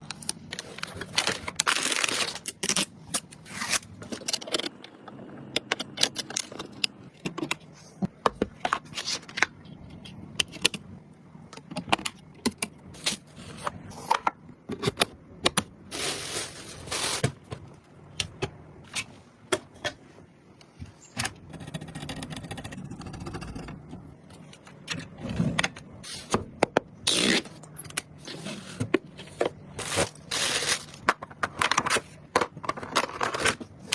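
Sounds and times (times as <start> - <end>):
packaging rustling: 15.9 - 17.3.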